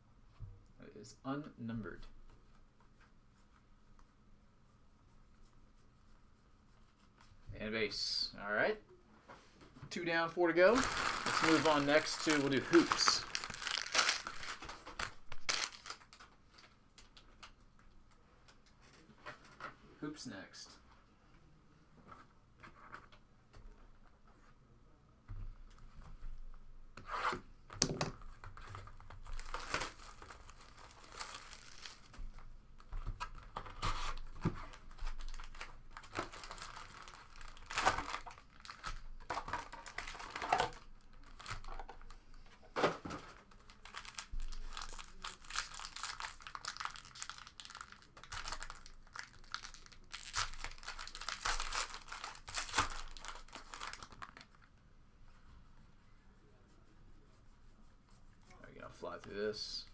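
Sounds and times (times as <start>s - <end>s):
plastic wrap tearing and crinkling: 10.6s - 17.2s, 28.3s - 32.2s, 32.8s - 42.2s, 43.4s - 54.7s.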